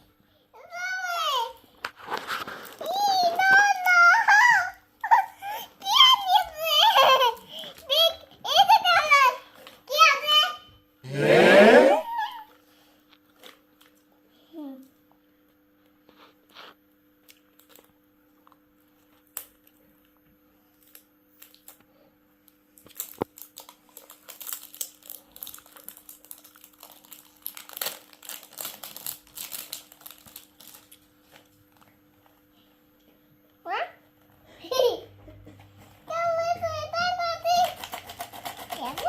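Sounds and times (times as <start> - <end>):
candy wrapper crinkling: 2.0 - 4.1, 17.4 - 17.9, 20.7 - 21.8, 22.8 - 31.8, 37.5 - 39.0.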